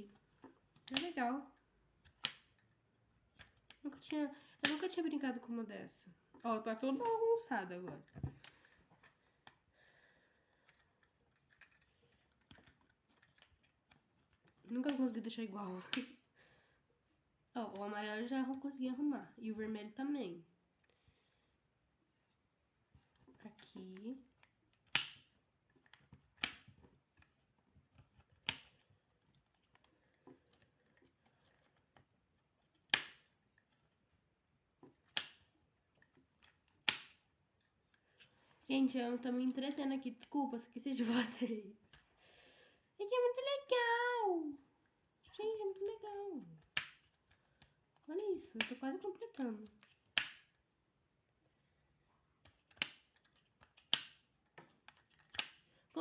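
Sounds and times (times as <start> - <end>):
plastic puzzle ball clicks: 0.1 - 1.2, 2.0 - 2.7, 23.6 - 33.8, 34.8 - 37.3, 45.7 - 50.6, 52.4 - 55.7.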